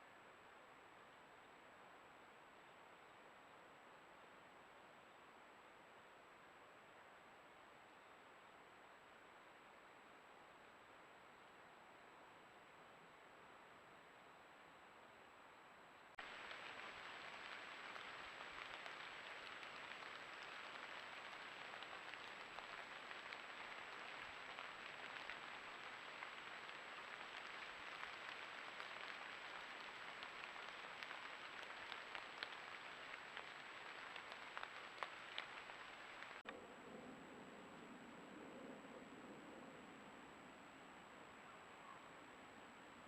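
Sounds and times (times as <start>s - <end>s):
small sharp ticks: 16.2s - 36.5s.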